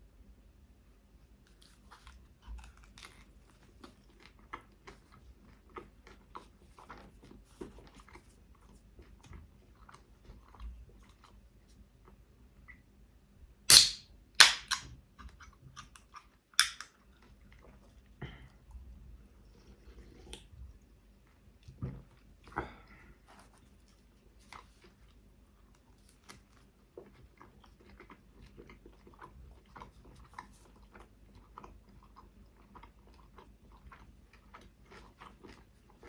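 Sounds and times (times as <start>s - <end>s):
close chewing: 1.5s - 12.2s, 19.4s - 36.0s
wet mouth clicks: 16.6s - 16.9s.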